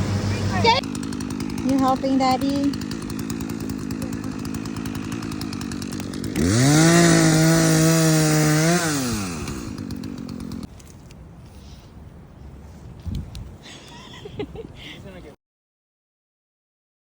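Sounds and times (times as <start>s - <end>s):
small petrol engine revving: 0.0s - 10.7s.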